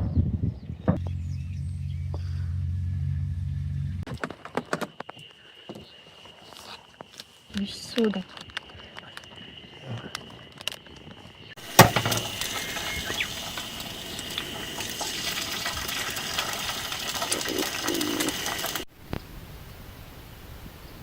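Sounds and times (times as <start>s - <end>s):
food sizzling on grill: 11.6s - 18.9s
sharp knock: 11.8s - 12.4s.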